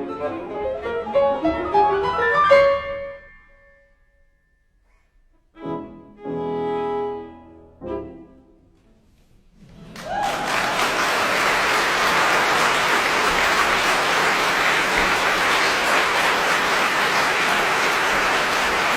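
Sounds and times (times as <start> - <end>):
audience applauding: 9.8 - 18.9.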